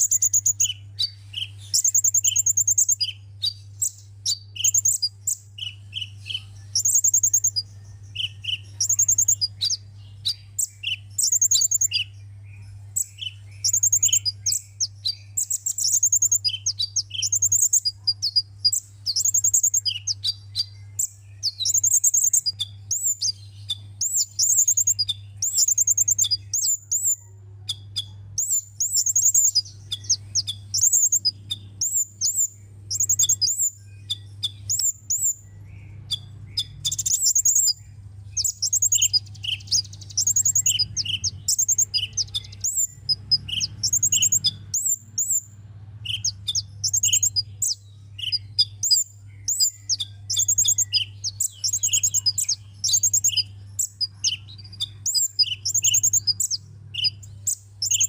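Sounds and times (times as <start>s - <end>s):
bird high-pitched trilled chirps: 0.0s - 58.0s
steady low hum: 0.0s - 58.0s.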